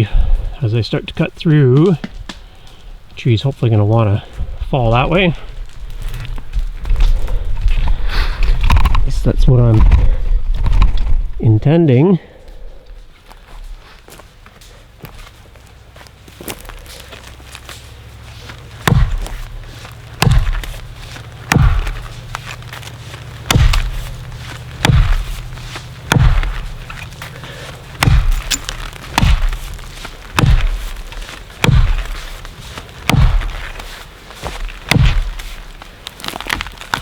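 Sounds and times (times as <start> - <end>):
axe chopping tree trunk: 18.5 - 37.0.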